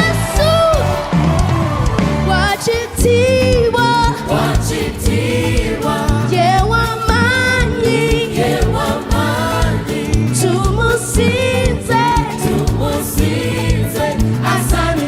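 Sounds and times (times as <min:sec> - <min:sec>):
bass guitar: 0:00.0 - 0:15.0
drums: 0:00.0 - 0:15.0
choir singing gospel: 0:02.5 - 0:15.0.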